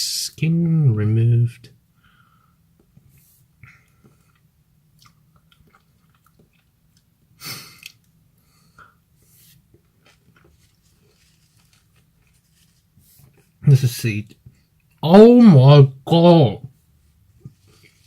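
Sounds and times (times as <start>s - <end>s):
person chewing wetly: 4.2s - 7.1s.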